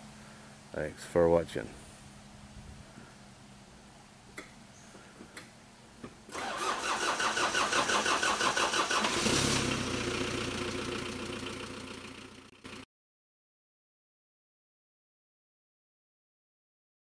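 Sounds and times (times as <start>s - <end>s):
car starter cranking: 6.3s - 10.6s
car engine idling: 6.4s - 12.8s.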